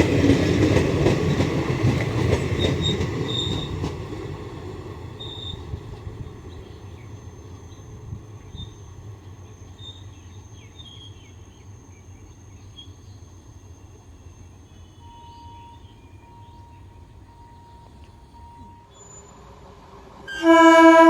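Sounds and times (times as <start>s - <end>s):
train rumble: 0.0s - 21.0s
birds chirping: 6.3s - 19.3s.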